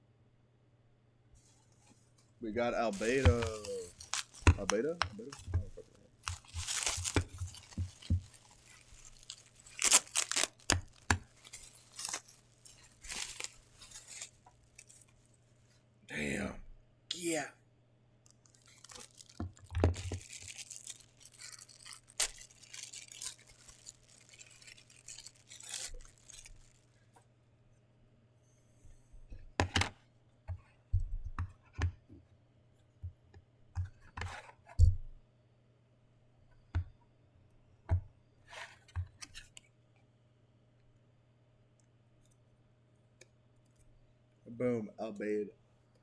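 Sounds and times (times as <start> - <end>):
packaging crinkling and tearing: 2.8 - 15.7, 18.3 - 27.1.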